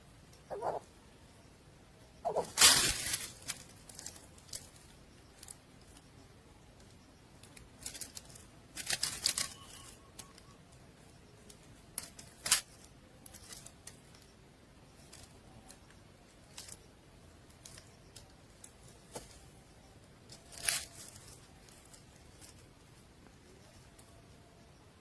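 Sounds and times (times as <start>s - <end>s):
rustling and scraping in nest: 2.3s - 6.1s.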